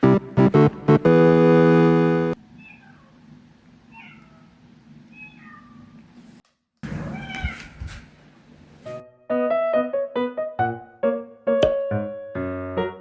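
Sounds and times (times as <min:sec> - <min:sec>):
piano music: 0:00.0 - 0:02.4, 0:08.9 - 0:13.0.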